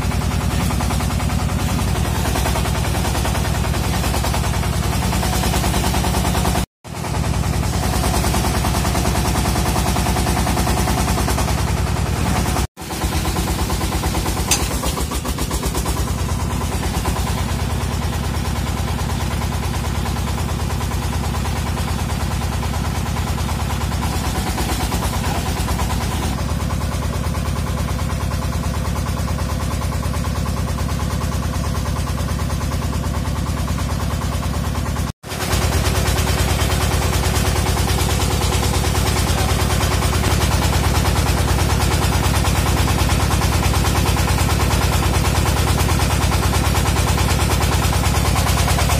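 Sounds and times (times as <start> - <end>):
drilling rig engine pulsing: 0.0 - 6.6, 7.4 - 17.9.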